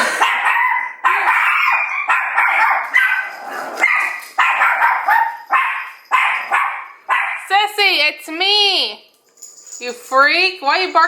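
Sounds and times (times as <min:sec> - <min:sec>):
small dogs barking: 0:00.1 - 0:07.5.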